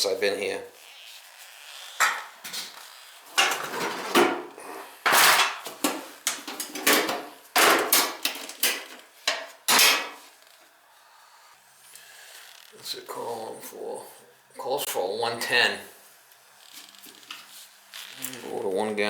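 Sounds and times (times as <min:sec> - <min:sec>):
metal tools clanking and rattling: 0:03.4 - 0:04.4, 0:05.1 - 0:10.2.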